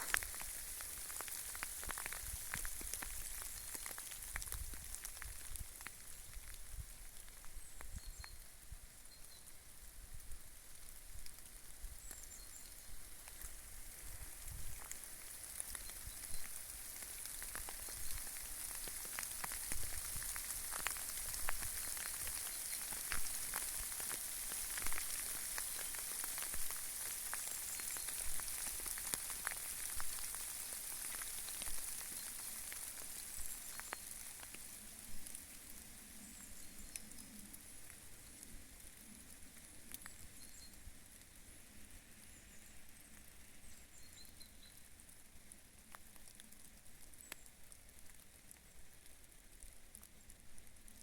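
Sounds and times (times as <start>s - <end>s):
hailstones ticking: 0.0s - 8.3s, 10.6s - 41.4s
rain hissing: 0.0s - 44.1s.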